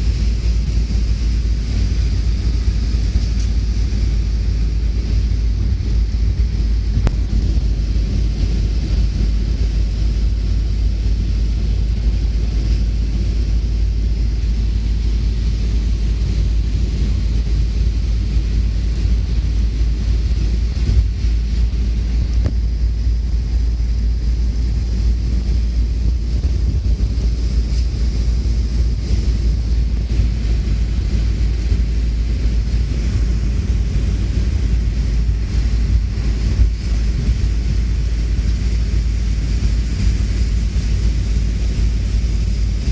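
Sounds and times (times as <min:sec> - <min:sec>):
wind blowing across microphone: 0:00.0 - 0:42.9.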